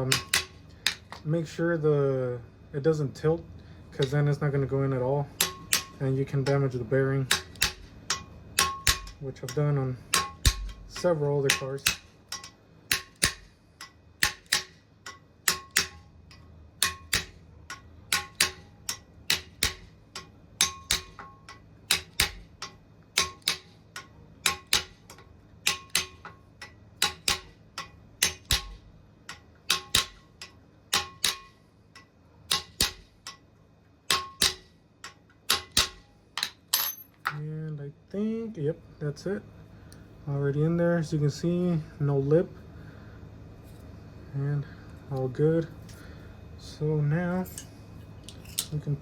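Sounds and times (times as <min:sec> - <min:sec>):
metal-on-metal tapping: 0:00.1 - 0:01.2, 0:05.4 - 0:06.7, 0:07.3 - 0:33.5, 0:34.1 - 0:37.4.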